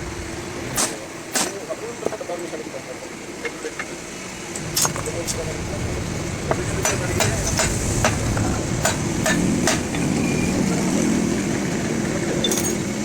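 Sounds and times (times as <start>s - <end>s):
steady low rumble: 0.0s - 0.8s, 4.6s - 12.4s
hammer striking metal: 6.8s - 8.2s, 8.8s - 10.0s.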